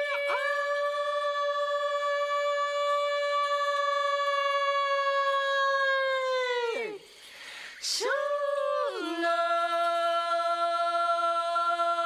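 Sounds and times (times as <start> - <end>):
person singing long high note: 0.0 - 7.0.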